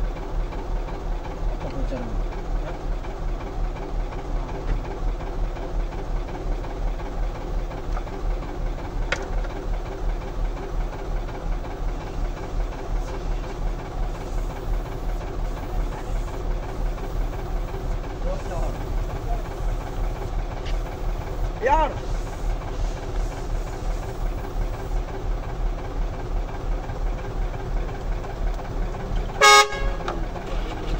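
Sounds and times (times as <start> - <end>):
diesel engine idling: 0.0 - 30.9.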